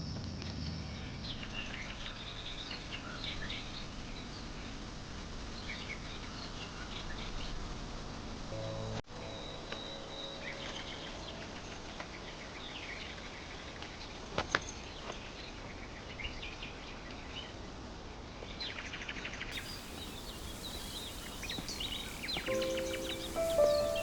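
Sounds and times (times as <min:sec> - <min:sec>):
background hiss: 0:19.6 - 0:24.0
bird trill: 0:19.6 - 0:24.0
birds chirping: 0:19.6 - 0:24.0.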